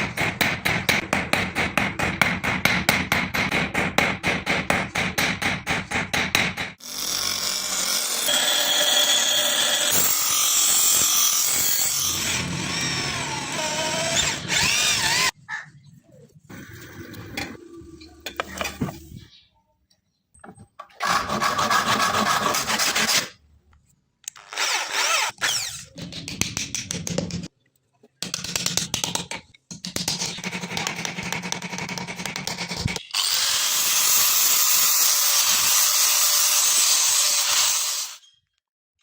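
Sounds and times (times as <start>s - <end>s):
power tools on wood: 6.8s - 15.3s, 24.5s - 25.8s, 33.2s - 38.2s.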